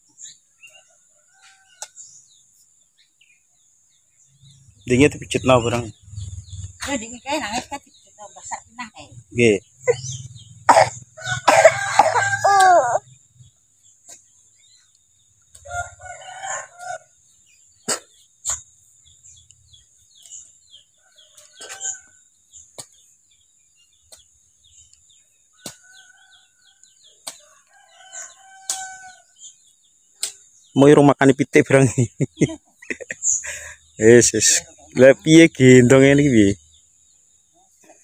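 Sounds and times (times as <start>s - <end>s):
rooster crowing: 11.2s - 13.0s, 15.6s - 17.2s, 25.7s - 29.4s.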